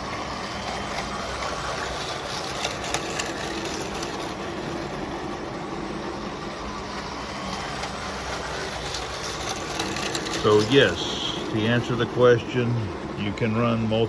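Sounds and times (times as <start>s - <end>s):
model train motors whirring: 0.0s - 14.0s.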